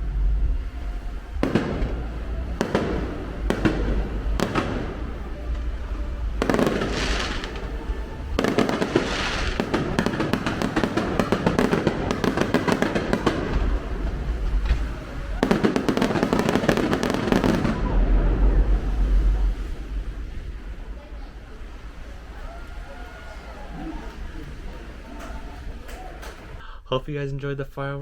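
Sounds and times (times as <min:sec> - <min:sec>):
fireworks booming: 0:00.0 - 0:26.6
fireworks cracking and crackling: 0:00.1 - 0:26.6.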